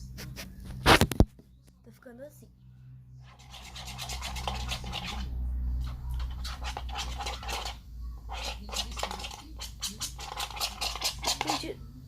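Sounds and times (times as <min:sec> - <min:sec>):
spoon scraping sticky slime: 0:03.3 - 0:11.8.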